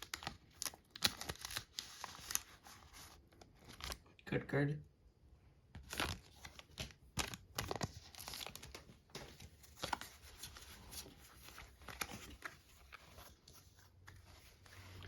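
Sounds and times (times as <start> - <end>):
foil wrapper crinkling: 0.0 - 4.0, 5.8 - 10.6.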